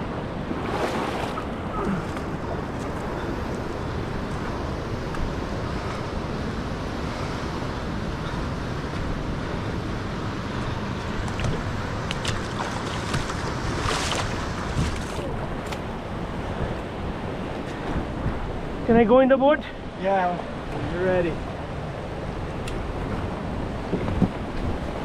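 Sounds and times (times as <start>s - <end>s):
river water rushing: 0.0s - 18.9s
wind buffeting microphone: 0.0s - 19.2s, 19.8s - 25.0s.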